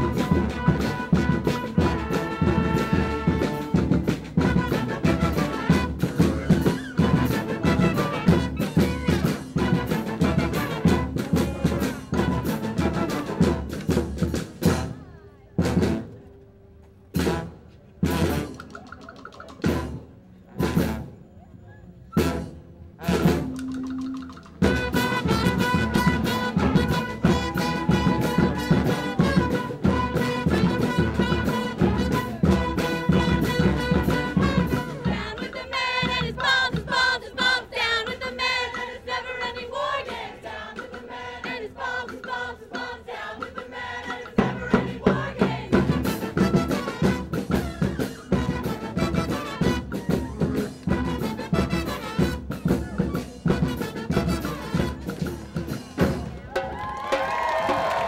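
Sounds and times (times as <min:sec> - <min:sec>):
brass band with drums: 0:00.0 - 0:18.8, 0:19.5 - 0:58.0
short horn notes: 0:22.2 - 0:35.1.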